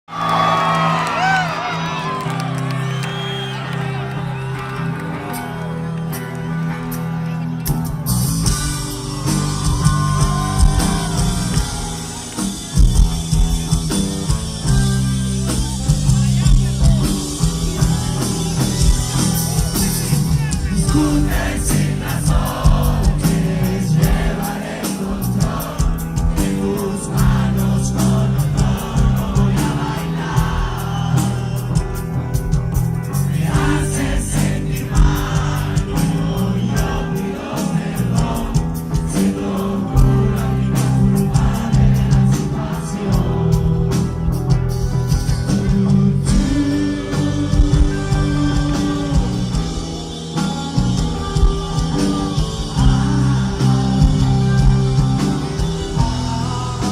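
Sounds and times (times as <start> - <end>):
live rock band playing: 0.1 - 56.9
drums hitting: 8.0 - 56.9
person singing: 19.6 - 31.7, 45.3 - 56.9.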